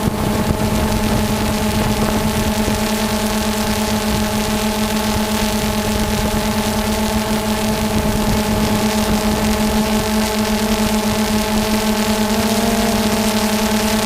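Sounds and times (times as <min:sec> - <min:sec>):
drone motors buzzing: 0:00.0 - 0:14.0.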